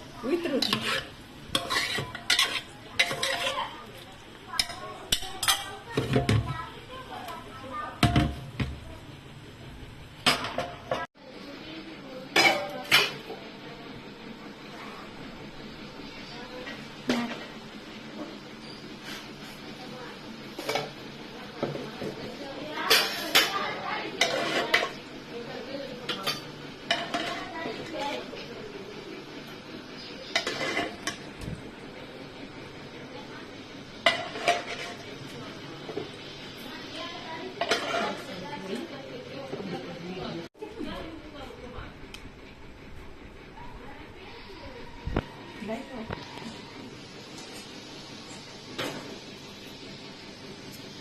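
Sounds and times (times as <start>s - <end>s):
metal utensils clinking on a pot: 0.4s - 3.7s, 4.5s - 6.4s.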